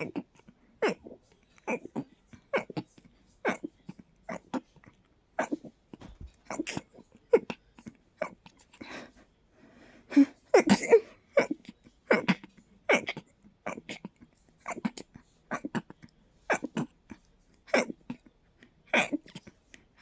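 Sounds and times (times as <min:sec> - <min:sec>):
person stifling sneezes: 0:10.1 - 0:15.9, 0:16.5 - 0:16.9, 0:17.7 - 0:18.2, 0:18.9 - 0:19.4.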